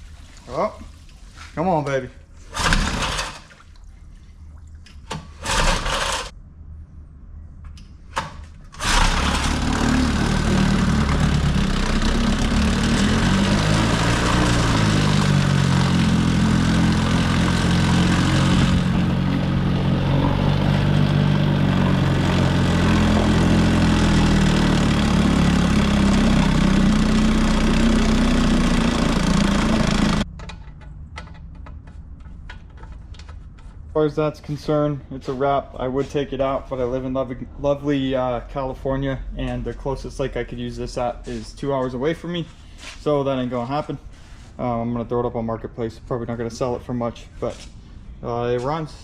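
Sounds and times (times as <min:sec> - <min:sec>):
outboard motor running: 0:08.8 - 0:30.3.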